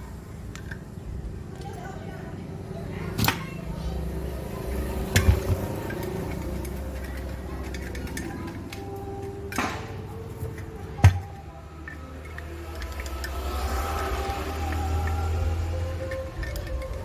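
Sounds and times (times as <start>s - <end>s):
tools knocking on metal: 5.1s - 6.5s.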